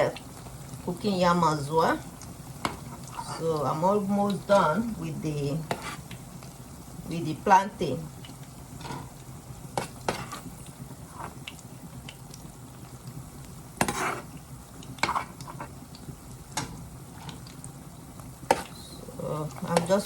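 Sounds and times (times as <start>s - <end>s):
plantain sizzling in hot oil: 0.0s - 20.0s
utensil scraping a pan: 5.6s - 6.1s, 9.8s - 10.5s, 13.8s - 14.4s, 15.0s - 15.8s.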